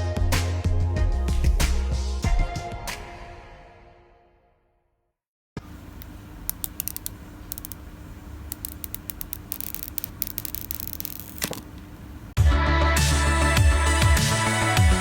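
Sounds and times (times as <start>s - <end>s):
faint steady hum: 5.6s - 12.4s
quick sharp clicks: 6.0s - 12.0s
packaging rustle: 8.6s - 11.8s.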